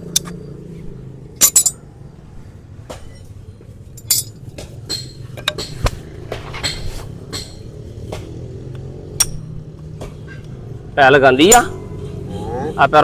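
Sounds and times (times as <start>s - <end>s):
tools scraping horse hoof: 4.0s - 8.4s.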